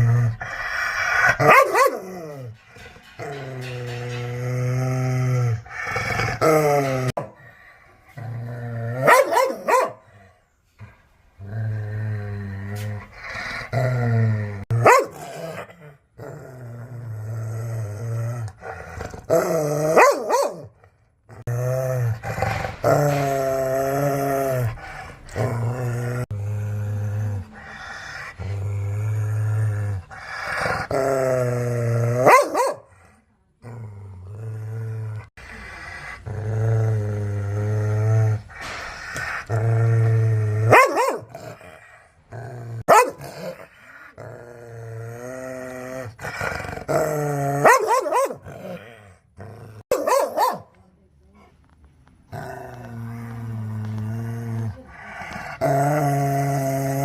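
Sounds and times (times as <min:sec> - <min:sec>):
dogs growling: 0:00.0 - 0:50.5, 0:52.3 - 0:57.0
dogs barking sharply: 0:01.4 - 0:02.0, 0:09.0 - 0:10.0, 0:14.8 - 0:15.3, 0:32.2 - 0:32.9, 0:40.7 - 0:41.3, 0:42.9 - 0:43.4, 0:47.6 - 0:48.4, 0:49.9 - 0:50.7.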